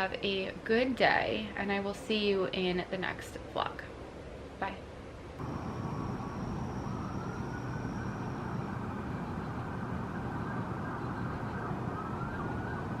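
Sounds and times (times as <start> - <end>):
distant siren wailing: 5.4 - 13.0
road traffic rumble: 5.4 - 13.0.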